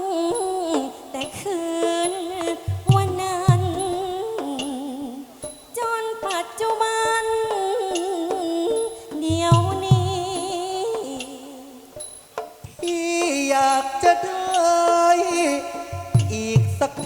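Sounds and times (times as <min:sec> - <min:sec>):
low drum strokes: 0:02.4 - 0:04.0, 0:15.0 - 0:17.0.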